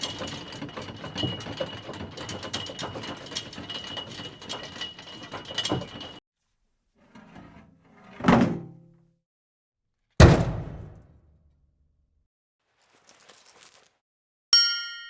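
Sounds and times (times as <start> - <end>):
heavy metal impact: 10.2 - 11.0
small metal pieces jingling: 12.8 - 14.0.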